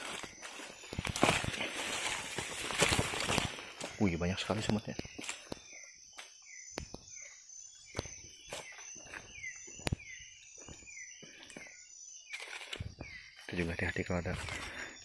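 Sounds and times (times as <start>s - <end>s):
footsteps in leaf litter: 0.0s - 4.0s
insects droning: 0.0s - 15.0s.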